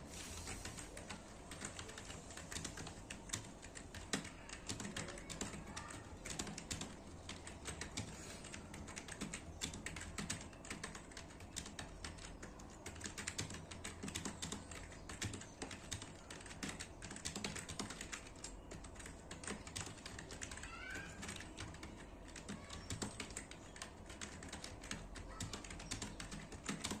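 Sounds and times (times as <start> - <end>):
keyboard typing: 0.3 - 27.0.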